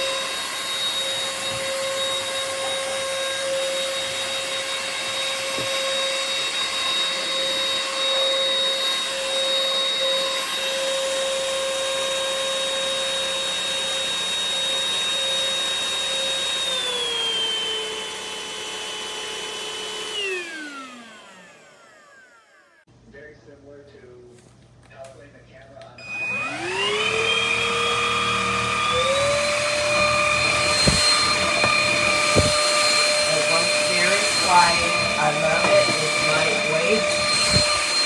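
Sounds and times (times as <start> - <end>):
stick vacuum whining: 0.0 - 22.5, 26.0 - 38.0
motor winding down: 26.1 - 38.0.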